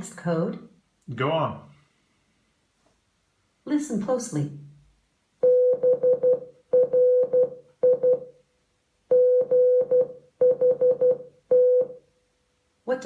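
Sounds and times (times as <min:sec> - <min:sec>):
morse code beeps: 0:05.4 - 0:08.3, 0:09.1 - 0:12.0.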